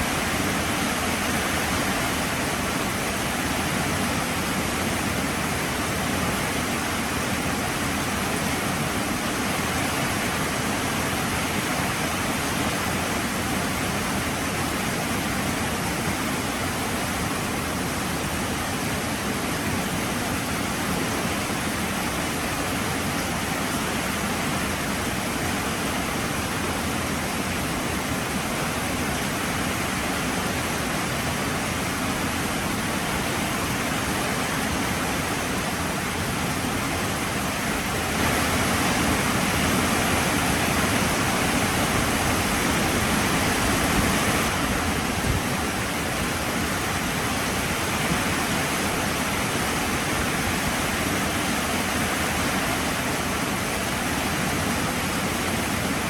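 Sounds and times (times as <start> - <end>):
heavy rain falling: 17.5 - 56.0.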